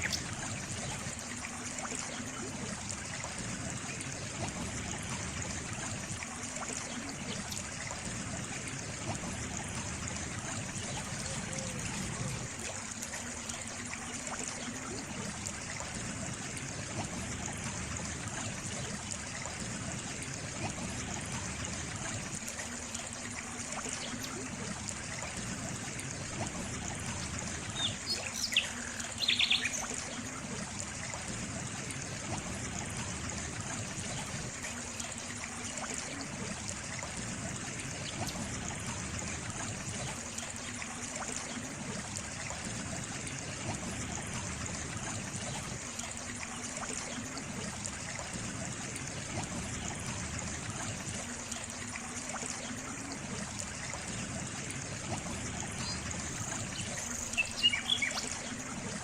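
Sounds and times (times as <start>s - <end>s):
water trickling in stream: 0.0s - 59.0s
bird chirps: 27.8s - 29.9s, 57.2s - 58.3s.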